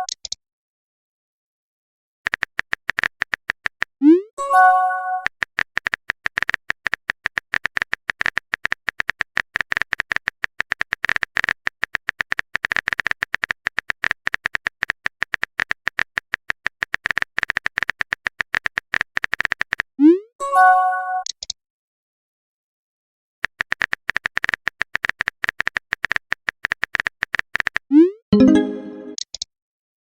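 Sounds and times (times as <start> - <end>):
phone keyboard typing taps: 2.3 - 3.9, 5.2 - 19.8, 23.4 - 27.8.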